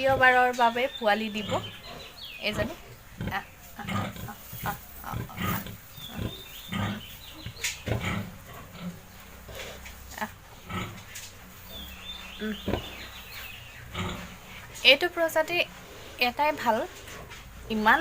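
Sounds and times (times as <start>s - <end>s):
pig grunting: 1.2s - 11.1s, 11.7s - 14.6s.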